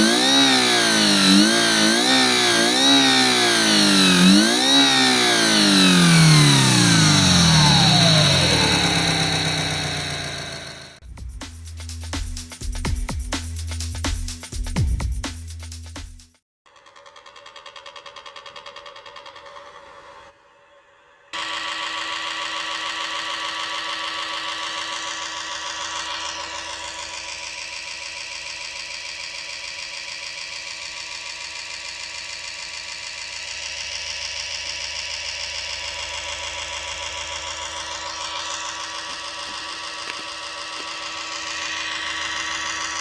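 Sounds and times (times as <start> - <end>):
mechanical whirr: 0.0 - 11.0, 37.0 - 43.0
synthetic engine sound: 0.0 - 11.0, 21.4 - 29.0, 35.6 - 43.0.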